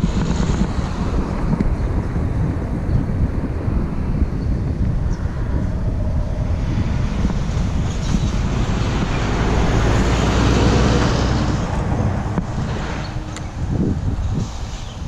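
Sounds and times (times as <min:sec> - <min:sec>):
road noise: 0:00.0 - 0:15.0
vehicle engine: 0:00.0 - 0:15.0
wind: 0:00.0 - 0:15.0.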